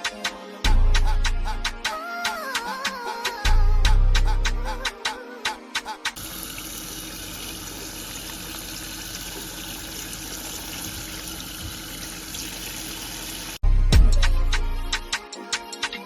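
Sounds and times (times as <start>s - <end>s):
music with heavy bass beat: 0.0s - 5.2s, 13.6s - 16.0s
running water: 6.2s - 13.6s.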